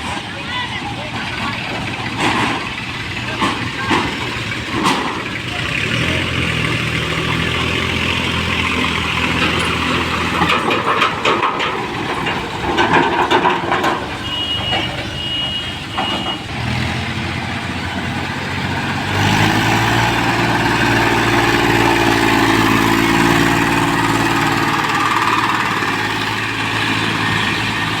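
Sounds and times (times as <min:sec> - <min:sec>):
diesel engine running: 0:00.0 - 0:28.0
clattering knocks: 0:07.4 - 0:28.0.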